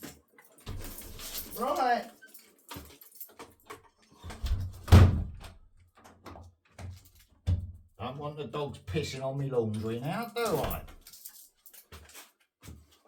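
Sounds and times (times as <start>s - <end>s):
door shutting with heavy thump: 4.4s - 5.5s.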